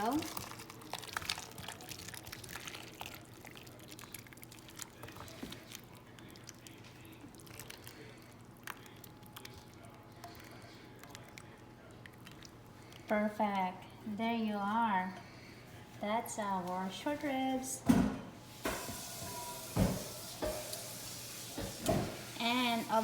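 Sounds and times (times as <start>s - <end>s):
sauce pouring and dripping: 0.0s - 13.1s, 18.5s - 22.4s.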